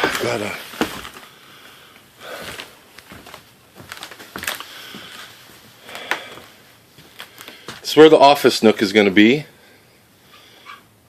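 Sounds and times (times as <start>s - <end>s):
faint knocks and scuffs: 0.0s - 1.2s, 2.4s - 5.8s.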